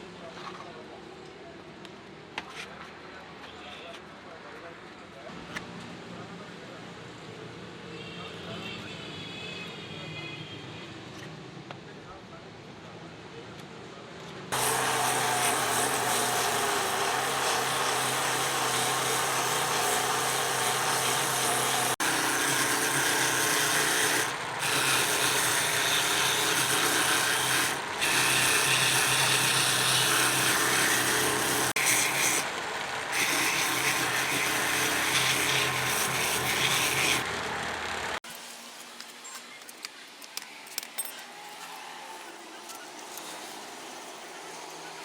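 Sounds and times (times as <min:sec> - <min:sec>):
power tool buffing rubber: 0:14.5 - 0:38.2.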